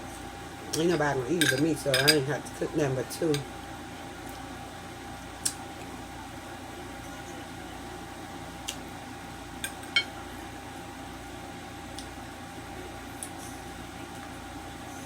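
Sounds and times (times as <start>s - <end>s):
steady low hum: 0.0s - 15.0s
cutlery clinking against dish: 1.4s - 2.3s, 9.6s - 10.2s.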